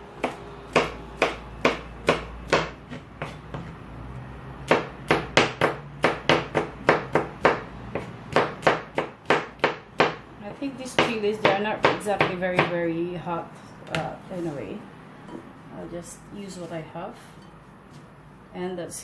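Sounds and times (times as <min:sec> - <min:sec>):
knife chopping on cutting board: 0:00.2 - 0:03.8, 0:04.7 - 0:10.2.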